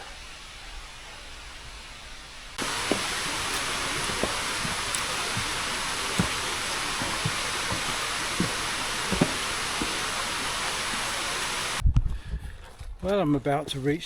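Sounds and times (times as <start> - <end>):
steady rushing hiss: 0.0 - 11.8
footsteps on a trail: 2.6 - 13.1.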